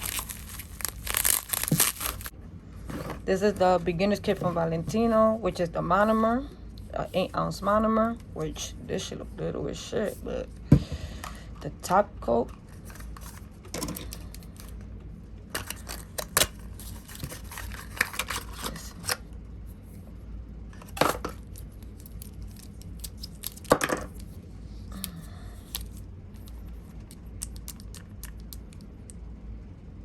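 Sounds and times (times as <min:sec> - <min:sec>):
packaging tearing and crinkling: 0:00.0 - 0:02.3, 0:21.5 - 0:24.3.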